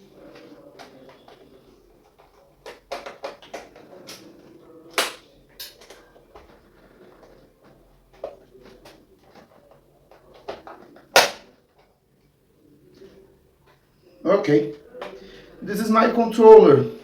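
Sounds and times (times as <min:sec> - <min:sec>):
hard objects clicking and tapping: 0:00.0 - 0:07.4.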